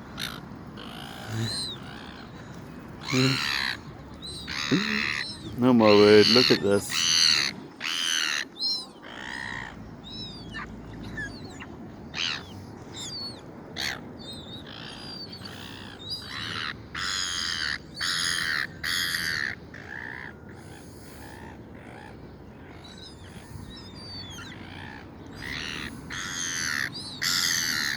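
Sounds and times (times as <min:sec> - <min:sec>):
gulls calling harshly: 0:03.0 - 0:20.2.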